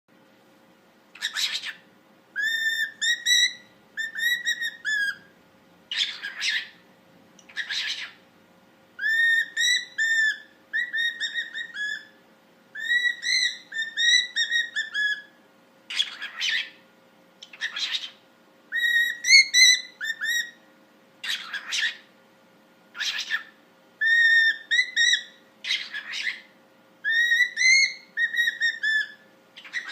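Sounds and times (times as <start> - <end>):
parrot whistling: 1.2 - 1.8, 2.4 - 5.3, 5.9 - 6.8, 7.5 - 8.2, 9.0 - 12.2, 12.8 - 16.8, 17.4 - 20.6, 21.2 - 22.1, 22.9 - 29.9
parrot harsh screeches: 5.9 - 6.8, 9.0 - 12.2, 12.8 - 15.3, 15.9 - 16.8, 18.8 - 20.6, 21.2 - 22.0, 23.0 - 26.5, 27.1 - 29.9.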